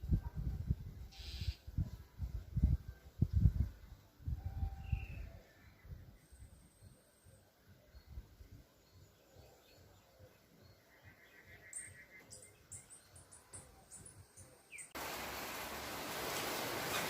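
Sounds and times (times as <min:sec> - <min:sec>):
steady hiss: 0:15.0 - 0:17.0.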